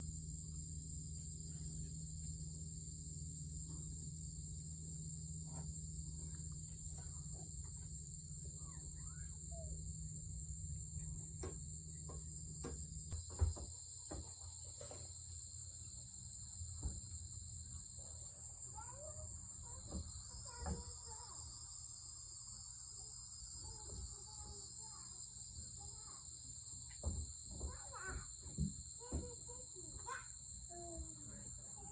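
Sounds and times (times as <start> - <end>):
crickets and night insects chirping: 0.0 - 31.9
faint bird chirps: 8.2 - 10.1.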